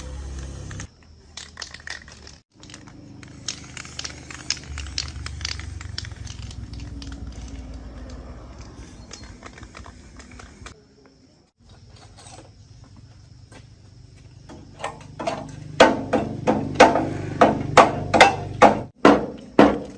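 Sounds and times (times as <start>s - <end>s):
small clicks and rattles: 0.7s - 10.8s
low hum: 2.6s - 10.8s.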